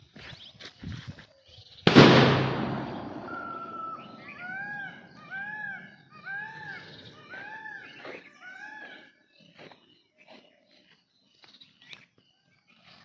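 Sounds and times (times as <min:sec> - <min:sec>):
firecracker bang: 0:01.9 - 0:04.6
animal calling: 0:03.0 - 0:09.1.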